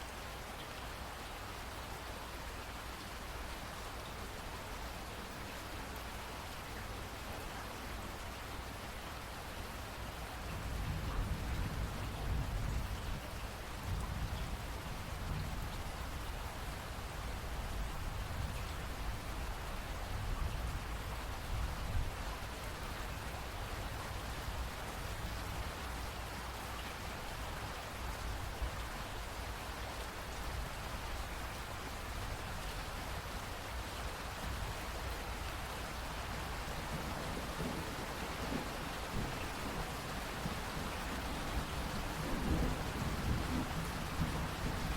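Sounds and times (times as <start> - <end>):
rain falling: 0.0 - 44.9
low rumble of thunder: 10.5 - 16.4, 36.2 - 44.9.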